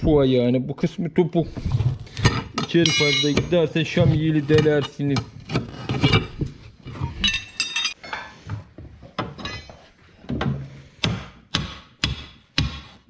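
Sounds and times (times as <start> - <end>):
metal ringing: 2.7 - 3.7, 7.2 - 8.0.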